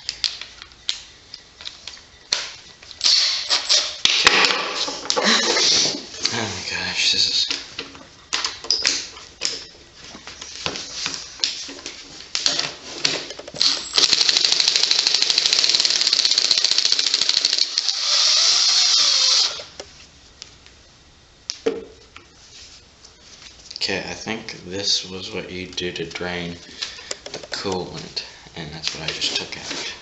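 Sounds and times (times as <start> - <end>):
ratchet wrench clicking: 13.4 - 19.8.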